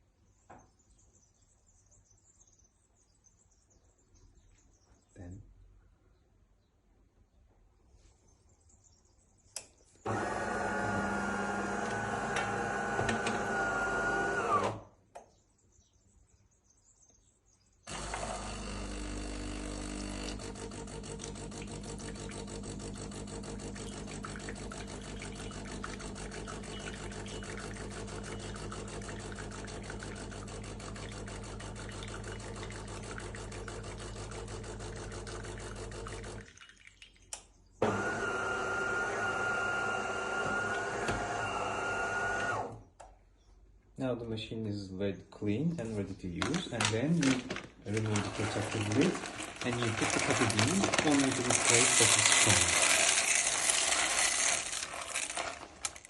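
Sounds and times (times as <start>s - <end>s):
coffee machine pump buzzing: 10.0s - 14.8s, 17.9s - 36.5s, 37.8s - 42.7s, 47.2s - 56.0s.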